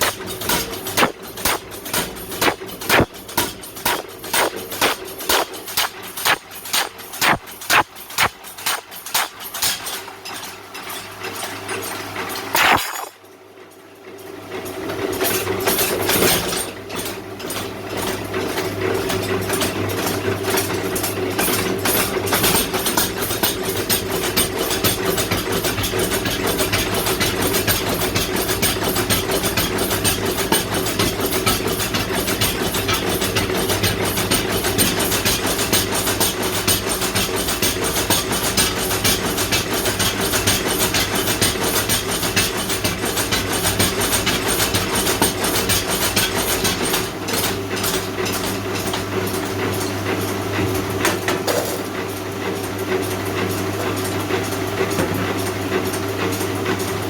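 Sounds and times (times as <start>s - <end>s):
power hammer striking hot iron: 0.0s - 0.3s, 0.9s - 9.8s.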